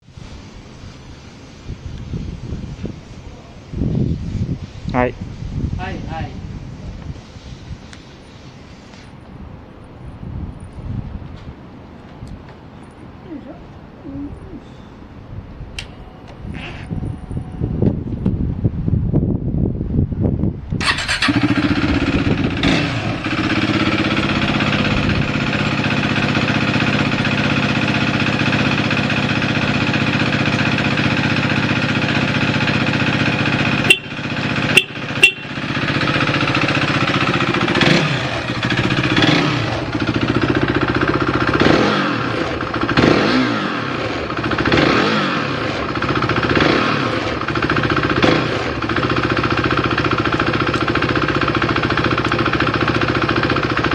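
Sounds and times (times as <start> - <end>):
motorcycle engine starting: 20.7 - 53.9
motorcycle engine idling: 20.8 - 43.1, 43.9 - 53.9
motorcycle engine revving: 20.8 - 53.9.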